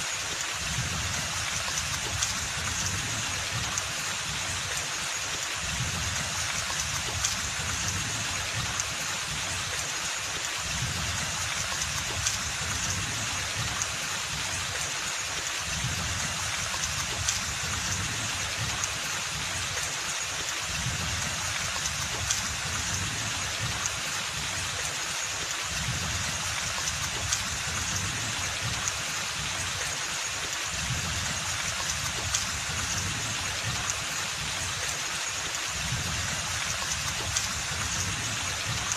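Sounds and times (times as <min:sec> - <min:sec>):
rain on foliage: 0:00.0 - 0:38.9.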